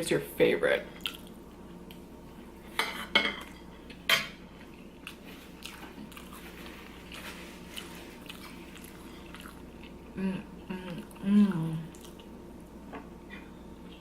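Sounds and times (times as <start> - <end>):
eating noises: 1.0 - 2.0, 4.6 - 12.4.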